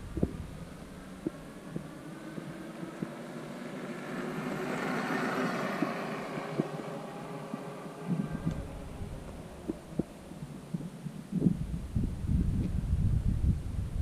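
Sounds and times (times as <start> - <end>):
electric motor whine: 0.0 - 10.7.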